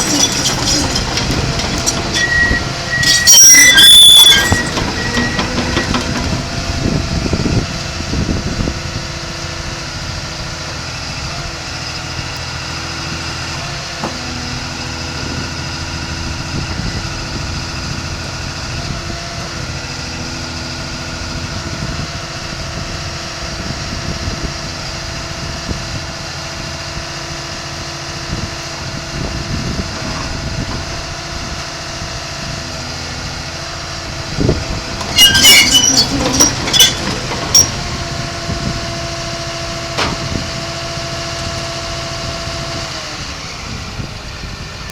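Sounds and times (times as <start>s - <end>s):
metallic clanks: 0.0s - 6.6s, 34.8s - 37.9s
sharp metallic squeals: 0.0s - 6.7s, 34.4s - 38.1s.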